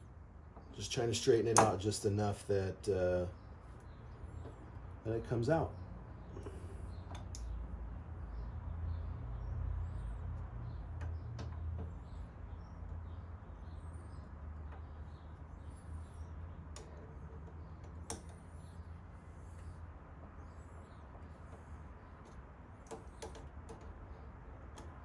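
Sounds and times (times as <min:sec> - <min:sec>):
small birds chirping: 0:00.0 - 0:25.0
steady low hum: 0:00.0 - 0:25.0.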